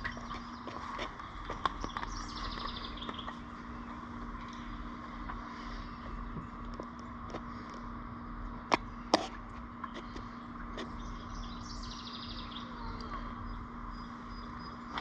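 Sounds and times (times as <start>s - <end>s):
steady low hum: 0.0s - 15.0s
faint high bird chirps: 11.0s - 14.9s.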